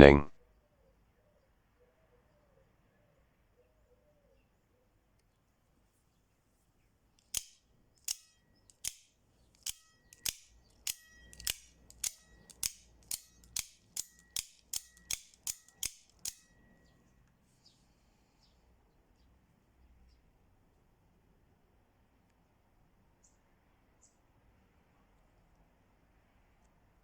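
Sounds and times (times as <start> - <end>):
knife blade metallic clicks: 7.2 - 16.5.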